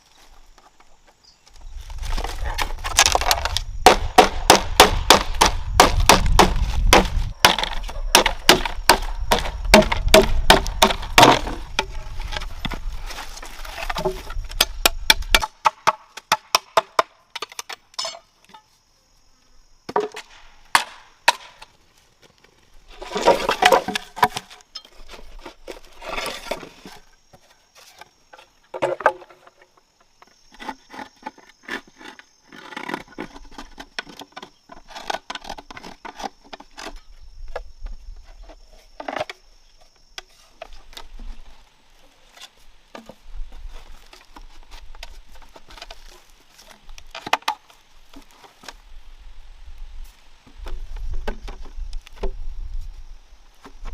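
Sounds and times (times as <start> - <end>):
knocks on wood and bamboo: 2.1 - 13.0, 13.7 - 18.6, 19.9 - 21.7, 23.1 - 25.6, 28.0 - 31.4, 43.9 - 48.8, 50.5 - 52.4
high insect drone: 17.7 - 53.9.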